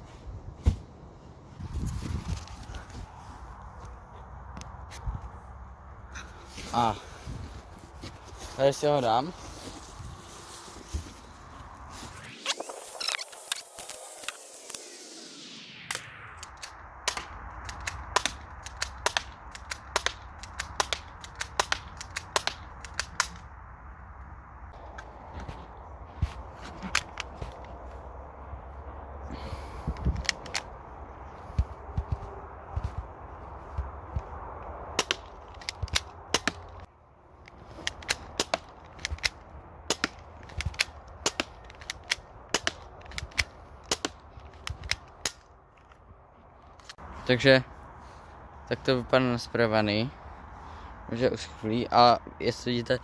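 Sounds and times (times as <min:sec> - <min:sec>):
sharp irregular clicks and snaps: 0:15.9 - 0:23.5, 0:35.0 - 0:45.9.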